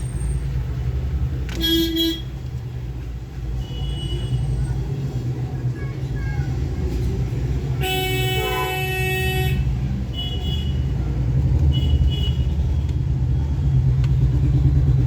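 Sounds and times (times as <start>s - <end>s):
horn-like honking tone: 7.8s - 9.7s.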